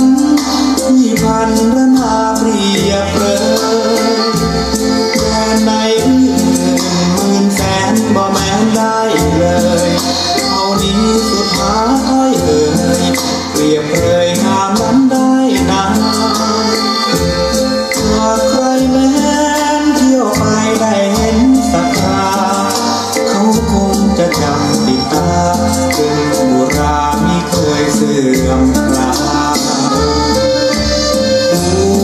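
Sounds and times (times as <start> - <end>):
shaker-like percussion beat: 0.0 - 32.0
song over a loudspeaker: 0.0 - 32.0.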